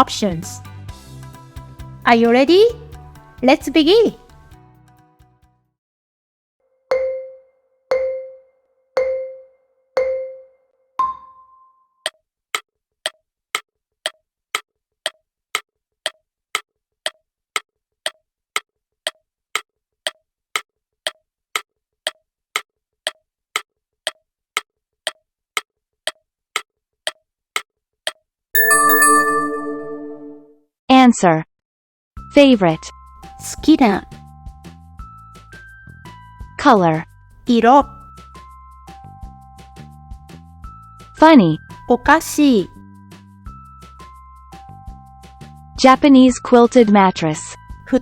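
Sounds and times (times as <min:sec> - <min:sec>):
countdown beeps: 0:28.6 - 0:30.4
higher start beep: 0:28.6 - 0:30.5.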